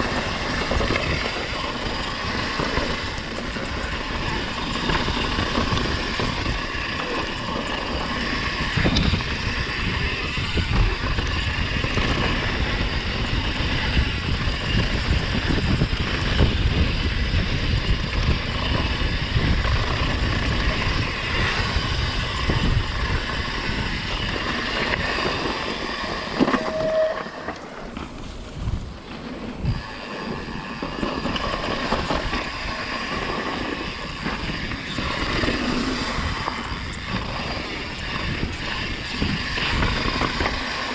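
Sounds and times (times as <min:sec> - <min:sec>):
bike tyre and air rush: 0:00.0 - 0:40.9
short squeal: 0:25.5 - 0:27.8.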